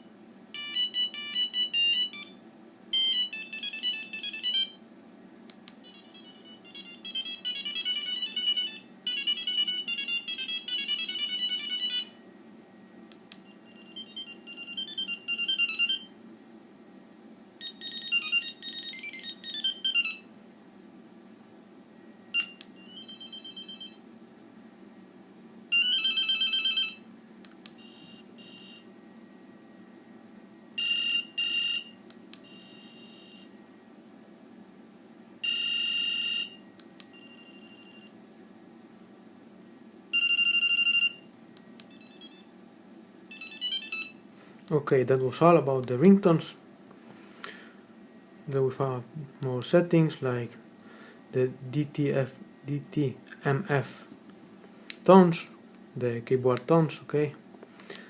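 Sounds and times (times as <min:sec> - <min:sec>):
monophonic phone ringtones: 0:00.6 - 0:04.8, 0:05.8 - 0:12.2, 0:13.5 - 0:16.1, 0:17.6 - 0:20.3, 0:22.3 - 0:24.0, 0:25.7 - 0:27.1, 0:27.8 - 0:28.9, 0:30.8 - 0:33.5, 0:35.4 - 0:38.1, 0:40.1 - 0:41.3, 0:41.9 - 0:42.5, 0:43.3 - 0:44.2.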